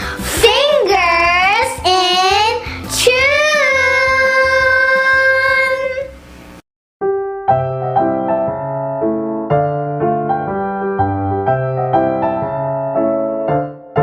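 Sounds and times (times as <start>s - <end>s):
bass notes: 0.0s - 13.7s
keyboard chords: 7.0s - 14.0s.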